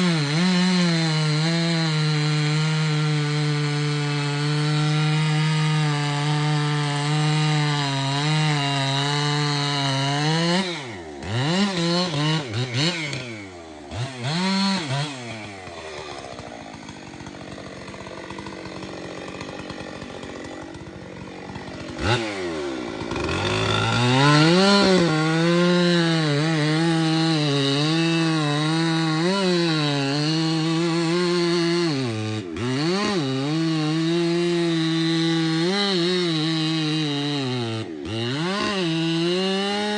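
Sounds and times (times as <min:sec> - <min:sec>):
chainsaw cutting and revving: 0:00.0 - 0:39.9.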